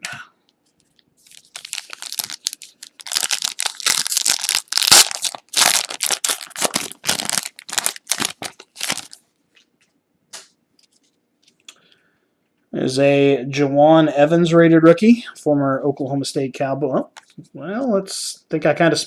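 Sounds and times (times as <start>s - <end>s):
foil wrapper crinkling and tearing: 1.2s - 9.2s.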